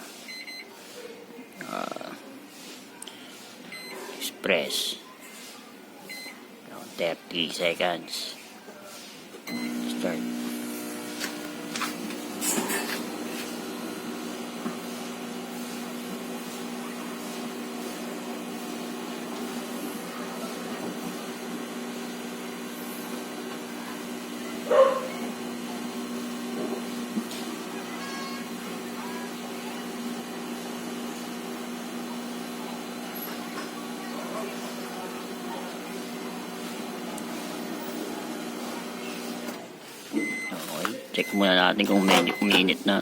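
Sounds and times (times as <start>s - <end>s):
microwave oven humming: 9.5s - 39.6s
dog barking: 24.6s - 25.2s.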